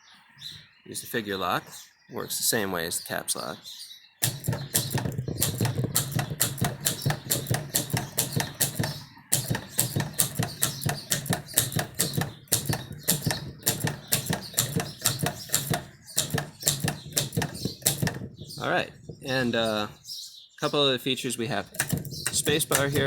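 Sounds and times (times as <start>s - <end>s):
typewriter keystrokes: 4.2s - 18.4s, 21.6s - 23.0s.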